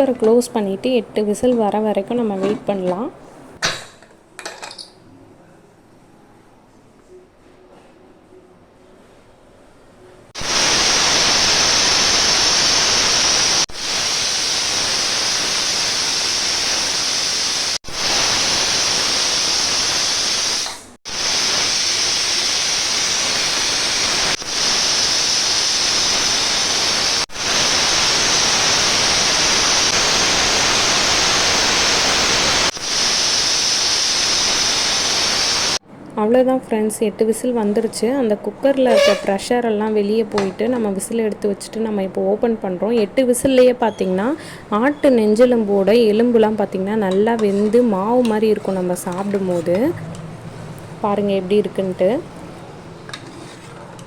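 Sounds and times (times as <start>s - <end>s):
pressure cooker whistle hissing: 10.4s - 35.8s, 38.9s - 39.4s.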